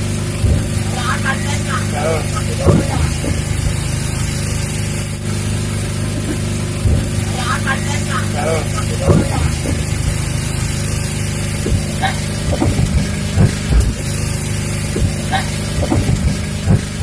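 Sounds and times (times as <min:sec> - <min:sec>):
engine humming: 0:00.0 - 0:17.0
faint voices: 0:00.5 - 0:03.8, 0:06.9 - 0:14.2.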